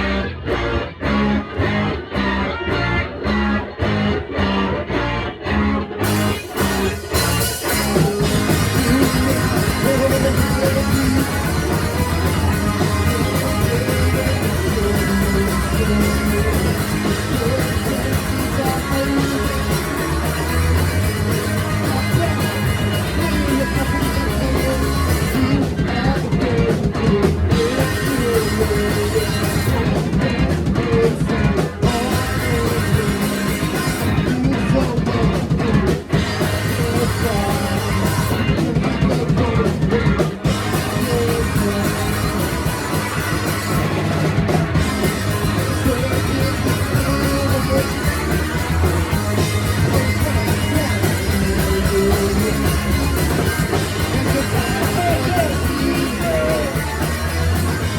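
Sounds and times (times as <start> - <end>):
live rock band playing: 0.0 - 57.9.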